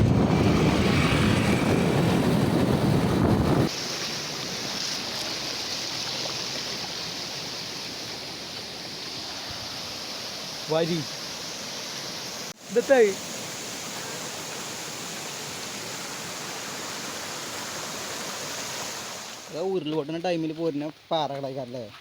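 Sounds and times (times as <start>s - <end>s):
heavy low rumble: 0.0s - 3.7s
stream water rushing: 3.6s - 21.2s.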